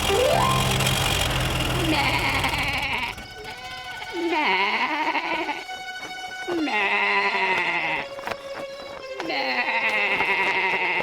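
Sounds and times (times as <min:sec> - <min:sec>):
lamb bleating: 0:02.0 - 0:05.6, 0:06.5 - 0:08.0, 0:09.3 - 0:11.0.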